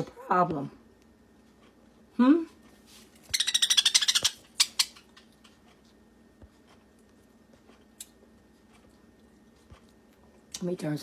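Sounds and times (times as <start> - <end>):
parakeet chirps: 3.3 - 5.3
parakeet rasping chatter: 3.3 - 5.3.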